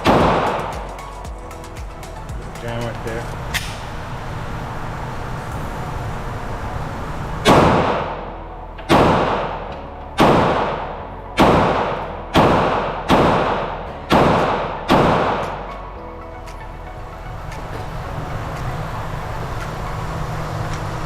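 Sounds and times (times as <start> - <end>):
pistol shots echoing: 8.9 - 15.5.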